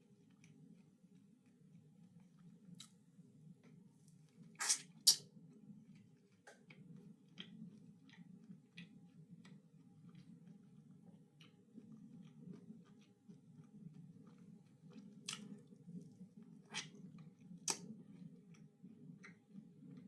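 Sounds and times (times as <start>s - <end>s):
low steady hum: 0.0s - 20.0s
person chewing: 4.6s - 5.2s, 12.2s - 15.8s.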